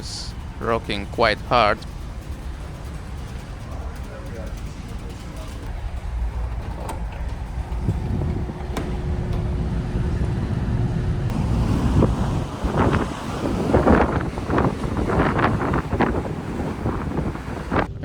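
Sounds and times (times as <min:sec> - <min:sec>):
ferry engine rumble: 0:00.0 - 0:18.0
wind gusts on microphone: 0:07.3 - 0:18.0.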